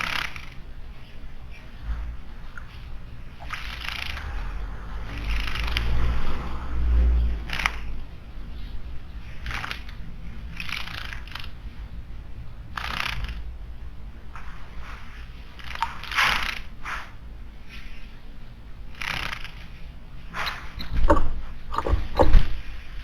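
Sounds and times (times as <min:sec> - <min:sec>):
low background rumble: 0:01.2 - 0:16.1.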